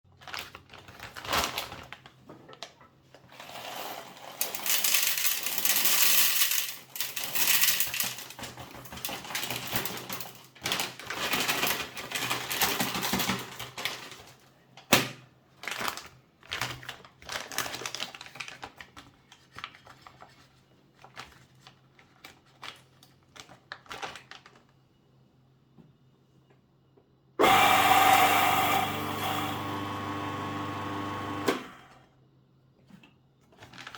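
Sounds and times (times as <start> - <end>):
coffee grinder motor running: 27.4 - 31.7.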